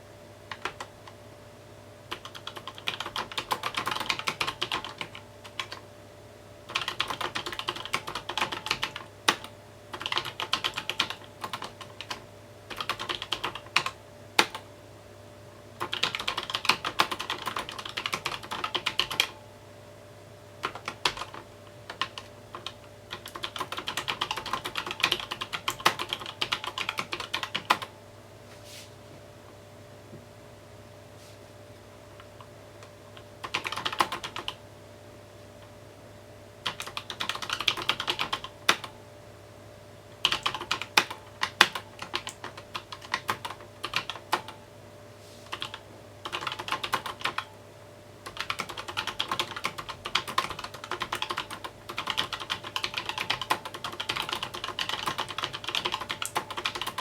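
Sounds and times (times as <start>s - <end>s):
mechanical keyboard typing: 0.5s - 0.9s, 2.1s - 5.8s, 6.7s - 14.7s, 15.8s - 19.4s, 20.6s - 27.9s, 33.2s - 34.6s, 36.6s - 39.0s, 40.2s - 44.6s, 45.5s - 47.5s, 48.2s - 57.0s.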